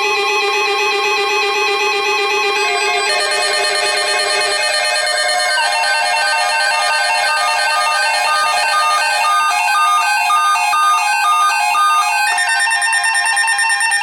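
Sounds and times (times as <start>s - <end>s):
weather radio alert alarms: 2.8s - 12.2s.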